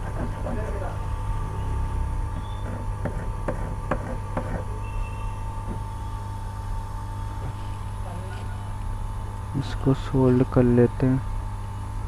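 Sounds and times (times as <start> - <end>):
low electrical hum: 0.0 - 12.0.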